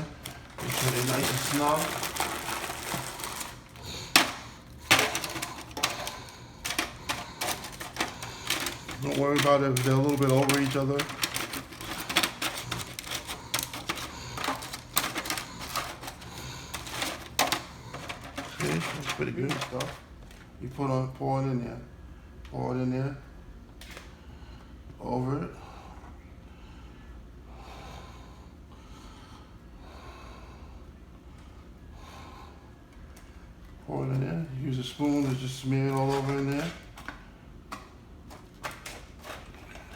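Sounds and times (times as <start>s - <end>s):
cookies clicking against pan: 0.0s - 20.0s.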